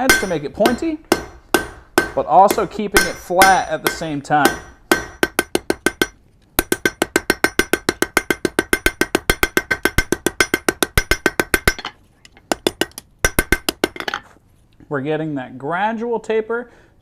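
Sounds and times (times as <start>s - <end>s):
hammer striking iron on anvil: 0.0s - 11.9s, 12.5s - 14.2s.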